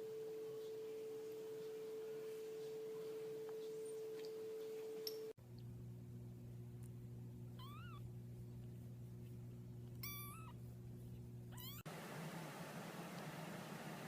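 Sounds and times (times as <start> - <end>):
low hum: 0.0 - 14.0
cat meowing: 7.6 - 8.0, 10.0 - 10.6, 11.5 - 11.9.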